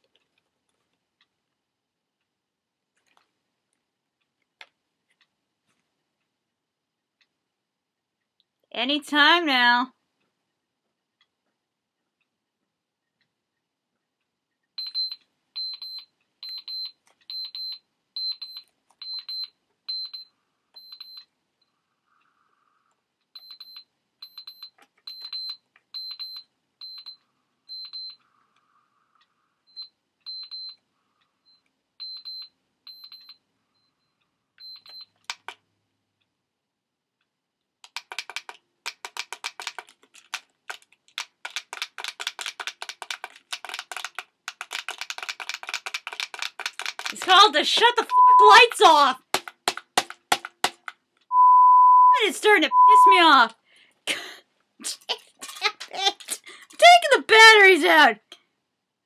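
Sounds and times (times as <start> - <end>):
alarm clock short high beeps: 47.3 - 49.1, 51.3 - 53.4.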